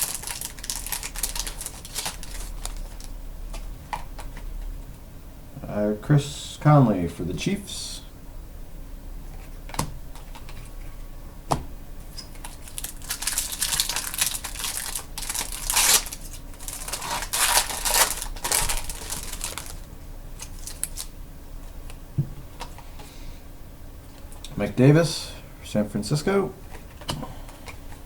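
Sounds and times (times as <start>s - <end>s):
wrapper crinkling and tearing: 0.0s - 3.2s, 12.4s - 21.1s.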